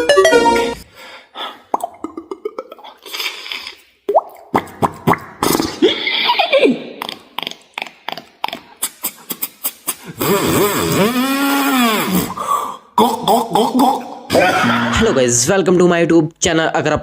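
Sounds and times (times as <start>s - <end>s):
bending vocal tone: 10.1s - 15.4s.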